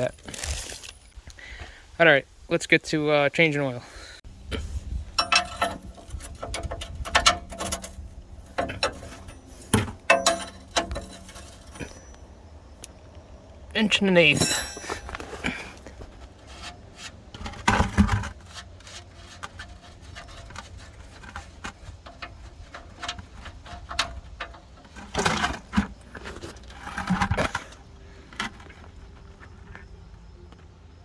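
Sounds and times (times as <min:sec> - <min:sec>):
clattering metal scrapes: 0:04.6 - 0:12.2, 0:14.3 - 0:28.8.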